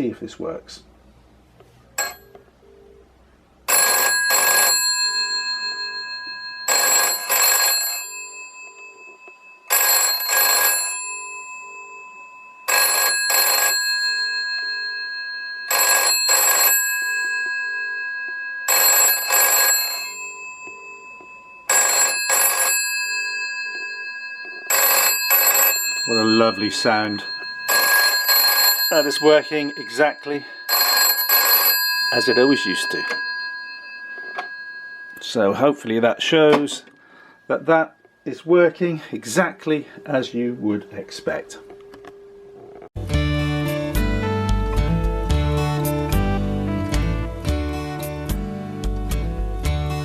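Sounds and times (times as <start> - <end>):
telephone bell ringing: 2.0 - 3.0, 3.7 - 35.7.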